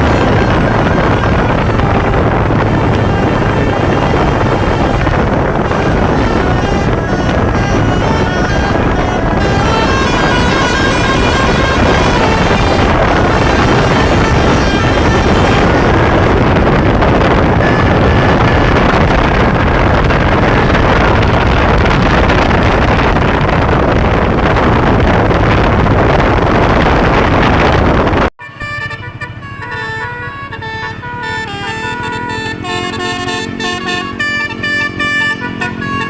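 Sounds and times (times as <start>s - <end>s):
faint horn tones: 0.0s - 23.8s, 28.4s - 36.0s
loud steady rushing noise: 0.0s - 28.3s
bus multi-tone musical horn: 0.0s - 36.0s.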